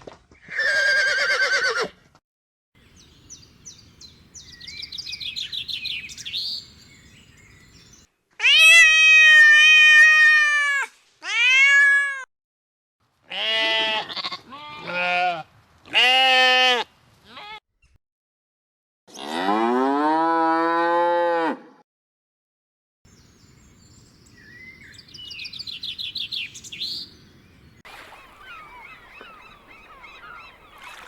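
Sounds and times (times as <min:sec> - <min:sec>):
goat bleating: 0:13.3 - 0:17.6.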